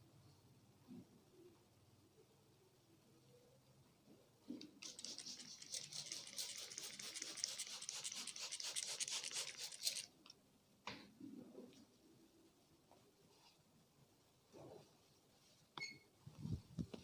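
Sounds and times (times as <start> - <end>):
hands rubbing over head: 4.8 - 10.1.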